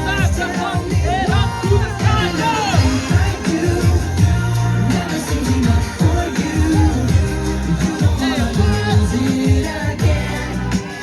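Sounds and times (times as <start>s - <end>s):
music with bass beat: 0.0s - 11.0s.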